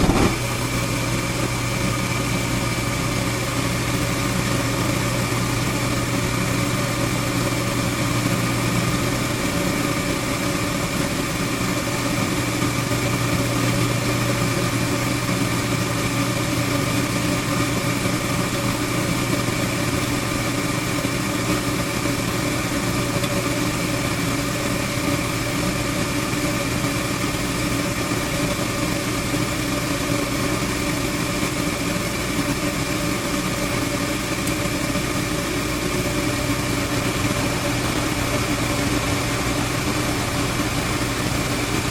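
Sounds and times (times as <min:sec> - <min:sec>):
gas burners rushing: 0:00.0 - 0:18.2, 0:27.7 - 0:41.9
furnace motor hum: 0:00.0 - 0:41.9.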